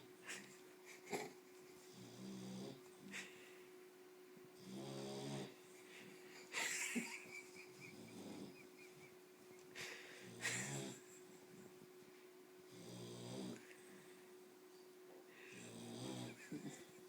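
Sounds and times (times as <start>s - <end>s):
faint steady hum: 0.0s - 17.0s
person snoring: 4.6s - 5.6s, 7.9s - 8.7s, 9.8s - 11.0s, 12.7s - 13.6s, 15.4s - 16.9s.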